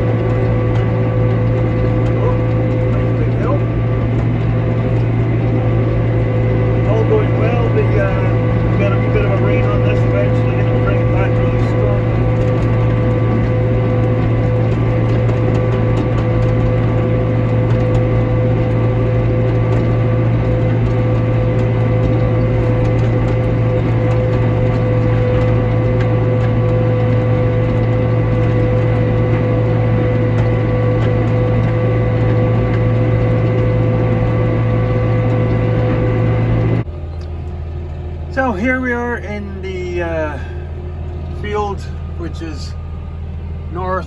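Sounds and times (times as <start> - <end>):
steady mechanical whine: 0.0 - 44.0
tractor and mower humming: 0.0 - 44.0
mechanical clatter: 7.4 - 37.3.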